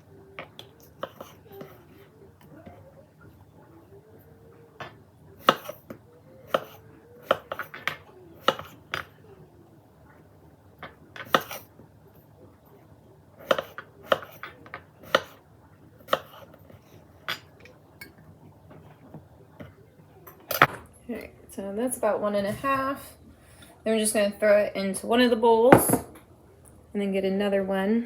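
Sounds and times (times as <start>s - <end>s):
dishes and utensils clinking: 16.1s - 20.8s.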